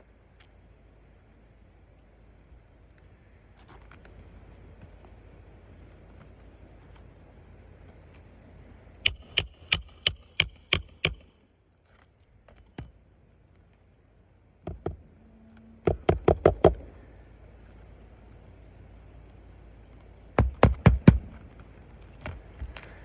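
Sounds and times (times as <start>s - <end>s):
hammer striking nails: 9.1s - 11.4s, 15.9s - 16.9s, 20.4s - 21.3s.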